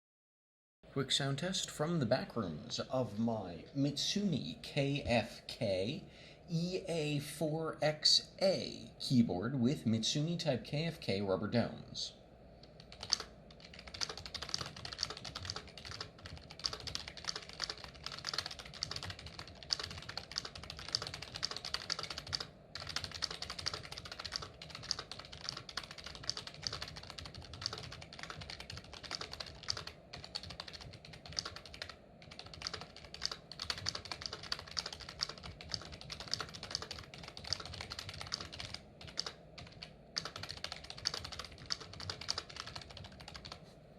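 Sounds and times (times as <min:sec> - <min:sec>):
keyboard typing: 0:12.6 - 0:43.6.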